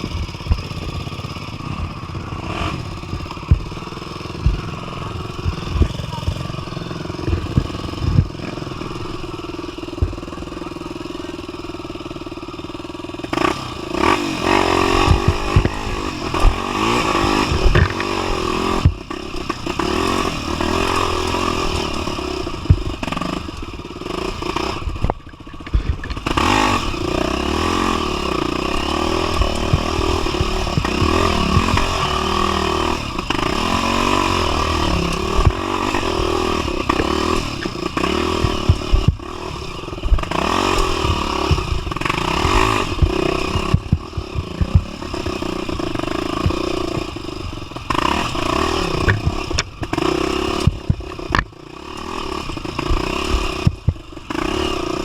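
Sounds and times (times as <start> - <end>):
motorcycle engine revving: 0.0 - 55.0.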